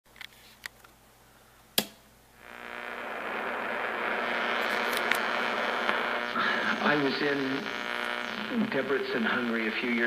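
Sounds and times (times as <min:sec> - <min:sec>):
radio static hiss with hum: 0:02.3 - 0:10.0
radio switch click: 0:04.2 - 0:06.3.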